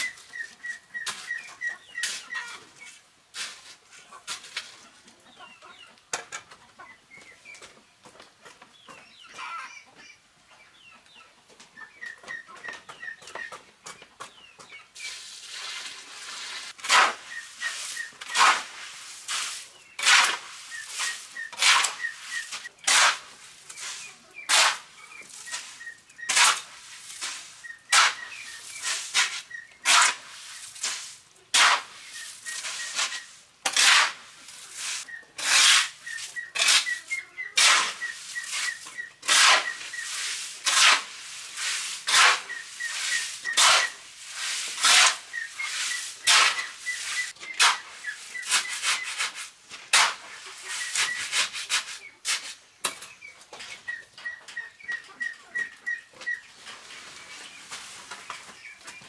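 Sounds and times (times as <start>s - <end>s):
hand tool rasping strokes: 16.6s - 24.9s, 26.3s - 30.6s, 31.6s - 37.0s, 37.6s - 52.4s.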